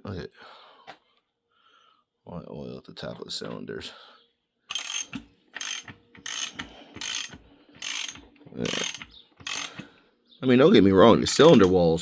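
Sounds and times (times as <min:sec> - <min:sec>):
ratchet wrench clicking: 0:04.7 - 0:09.8, 0:11.3 - 0:11.8.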